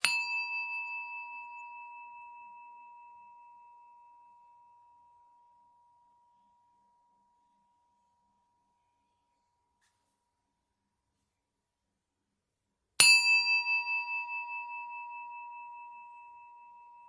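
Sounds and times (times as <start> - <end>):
meditation bell ringing: 0.0 - 6.7, 13.0 - 17.0.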